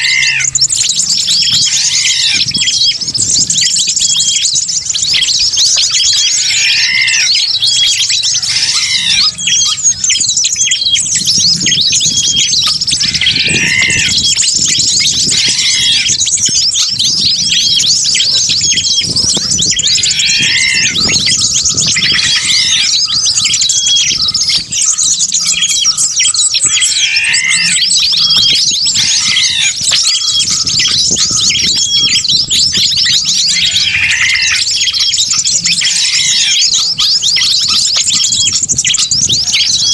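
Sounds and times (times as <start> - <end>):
lower arching bird call: 0.0 - 0.6, 6.3 - 9.8, 13.0 - 14.3, 19.9 - 21.2, 33.6 - 34.7
small birds chirping and trilling: 0.0 - 39.9.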